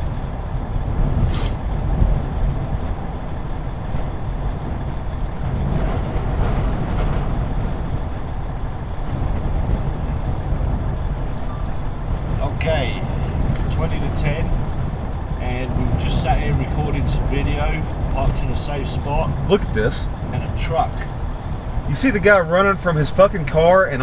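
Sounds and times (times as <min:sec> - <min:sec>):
strong gusting wind: 0:00.0 - 0:24.0
short hiss: 0:01.3 - 0:01.6.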